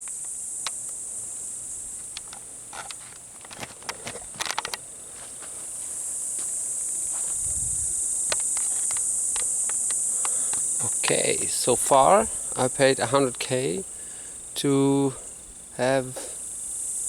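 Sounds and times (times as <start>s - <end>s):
insect chorus hissing: 0.0s - 17.0s
sharp clicks and crackles: 2.0s - 4.8s, 8.3s - 11.3s.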